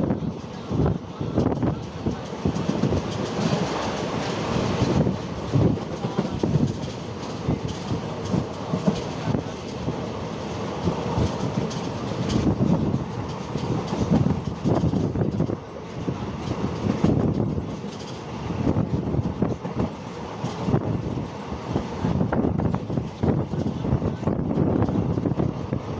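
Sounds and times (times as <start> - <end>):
train wheels clattering on rails: 0.0 - 25.9.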